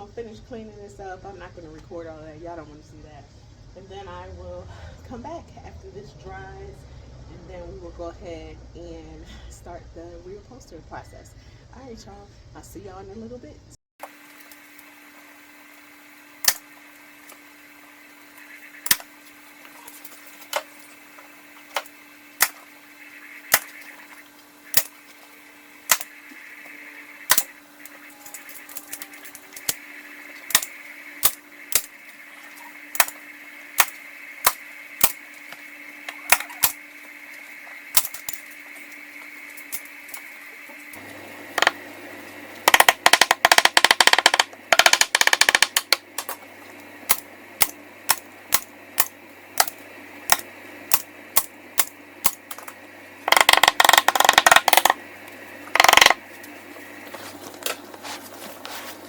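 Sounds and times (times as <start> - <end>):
rapid clicks clattering: 25.9 - 36.8, 42.6 - 46.4, 47.1 - 55.0, 55.7 - 56.3.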